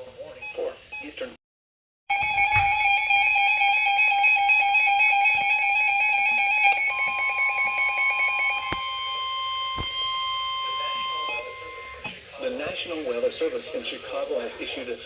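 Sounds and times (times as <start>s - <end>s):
electronic alarm tone: 2.1s - 12.2s
higher steady alarm tone: 2.1s - 12.2s.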